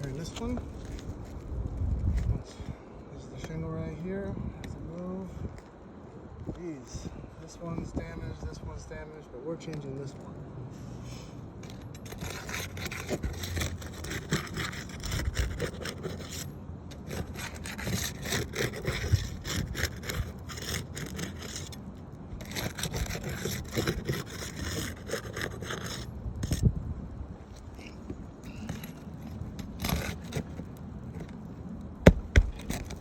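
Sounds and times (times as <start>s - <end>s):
rough scraping on roof shingle: 0.0s - 2.5s, 11.6s - 26.7s, 27.6s - 33.0s.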